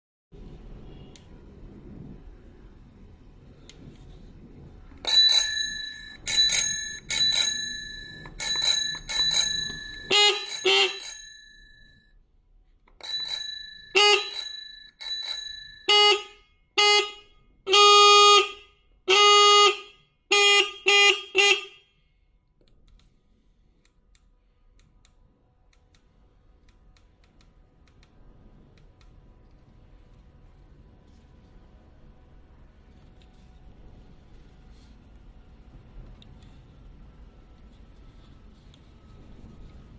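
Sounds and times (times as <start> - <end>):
bicycle bell rings: 5.0 - 12.0, 13.0 - 15.9.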